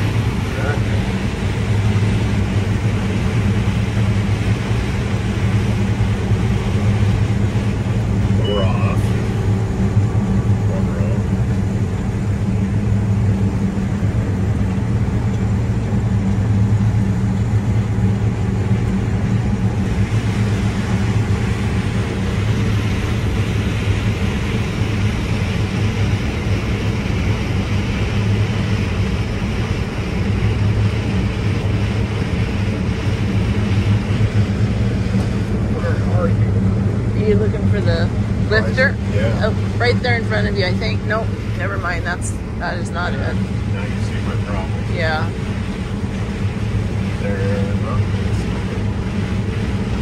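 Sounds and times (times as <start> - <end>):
combine harvester drone: 0.0 - 50.0.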